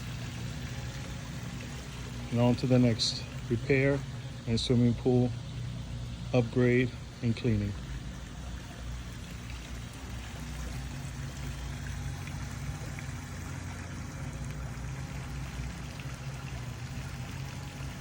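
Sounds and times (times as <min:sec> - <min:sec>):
low steady hum: 0:00.0 - 0:18.0
water splashing into pool: 0:07.6 - 0:18.0.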